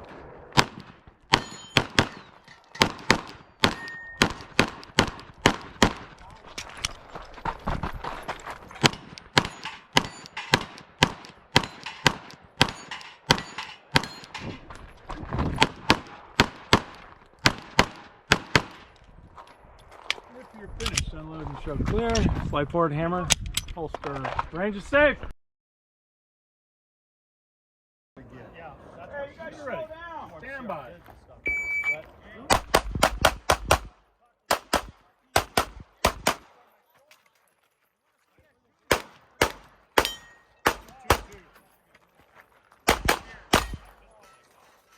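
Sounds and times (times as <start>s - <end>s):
pistol shots: 0.5s - 6.2s, 8.8s - 14.6s, 15.6s - 19.0s, 32.5s - 36.6s, 38.9s - 41.5s, 42.9s - 44.1s
shot timer beep: 31.5s - 32.0s.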